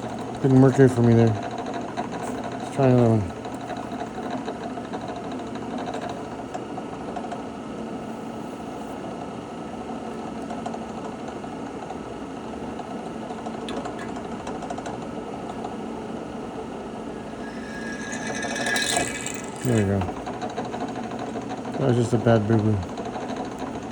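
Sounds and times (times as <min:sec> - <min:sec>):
drill bit cutting noise: 0:17.1 - 0:20.1.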